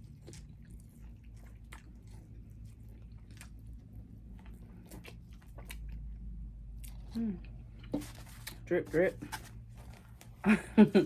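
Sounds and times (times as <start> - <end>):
person chewing corn on the cob: 0.0 - 8.7.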